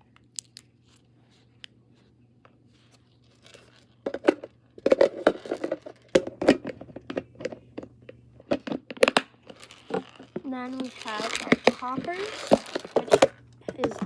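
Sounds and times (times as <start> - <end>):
food packaging crackling: 2.9 - 6.5, 9.0 - 14.0.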